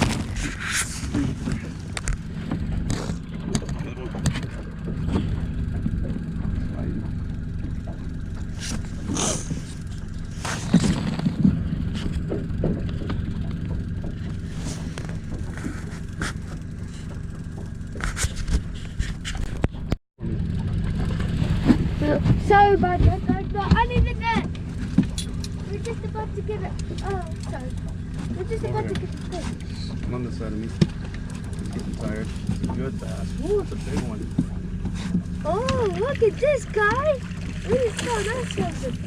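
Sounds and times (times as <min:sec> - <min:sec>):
boat motor humming: 0:00.0 - 0:39.0.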